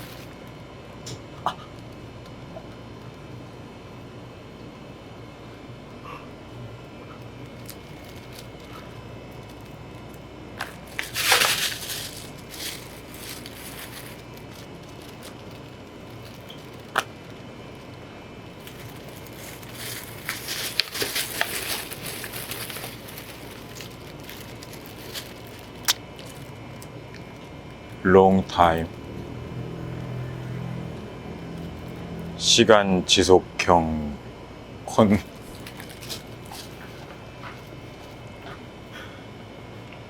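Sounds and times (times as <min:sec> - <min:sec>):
crunching and crinkling: 0:00.0 - 0:02.0, 0:07.1 - 0:30.2, 0:35.1 - 0:38.7.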